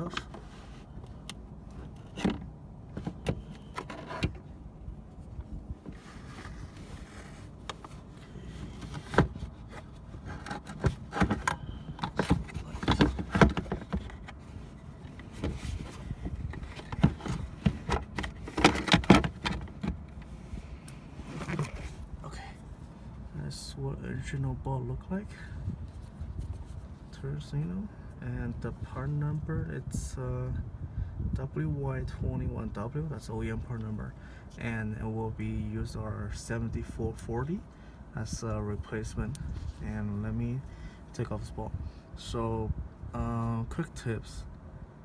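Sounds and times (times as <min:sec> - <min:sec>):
rubbing and scraping: 0:05.1 - 0:20.5, 0:21.1 - 0:22.0.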